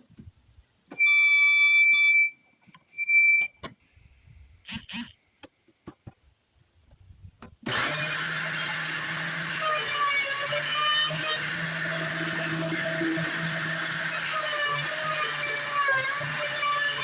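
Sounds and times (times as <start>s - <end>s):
thickness planer motor humming: 7.7s - 17.0s.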